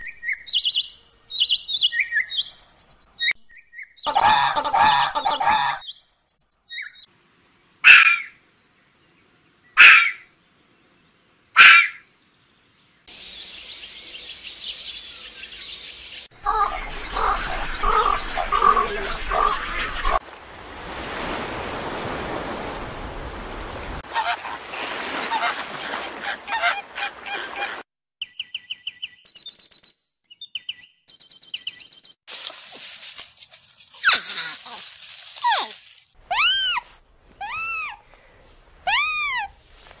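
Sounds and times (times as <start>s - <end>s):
bird calls: 0.0s - 7.1s, 13.1s - 20.2s
rising and falling calls: 33.9s - 38.0s, 38.9s - 39.9s.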